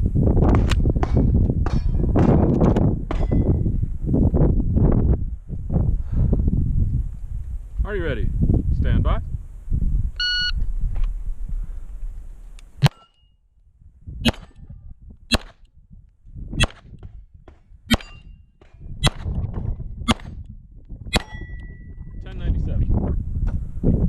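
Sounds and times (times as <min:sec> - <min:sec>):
pistol shots: 0:14.3 - 0:14.6, 0:15.3 - 0:15.6, 0:16.6 - 0:16.9, 0:17.9 - 0:18.3, 0:19.0 - 0:19.3, 0:20.1 - 0:20.4.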